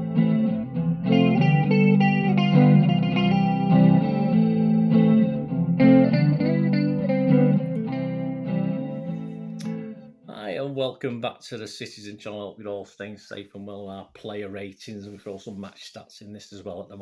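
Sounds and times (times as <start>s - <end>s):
guitar intro music with effects: 0.0s - 10.3s.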